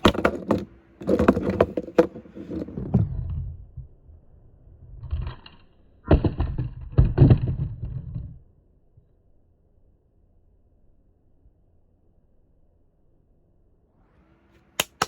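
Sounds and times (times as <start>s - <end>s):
toy trucks rolling and clattering: 0.0s - 3.5s.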